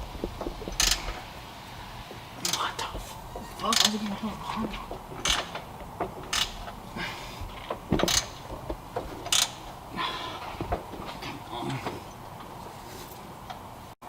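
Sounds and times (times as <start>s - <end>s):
metal tools clicking and knocking: 7.6s - 9.7s.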